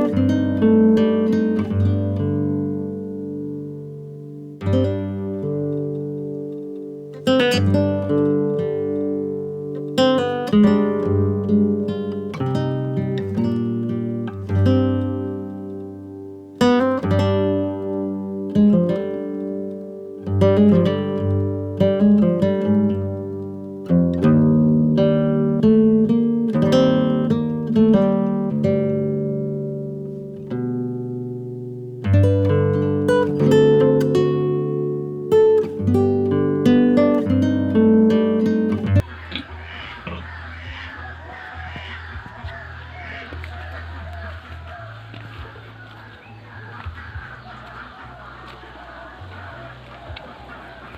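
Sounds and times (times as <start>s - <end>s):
acoustic guitar music: 0.0s - 40.7s
low background hubbub: 37.0s - 50.9s.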